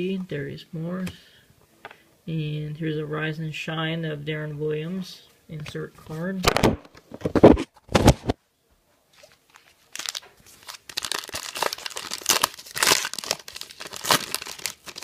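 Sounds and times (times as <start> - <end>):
plastic wrapper crinkling and tearing: 9.2 - 15.0.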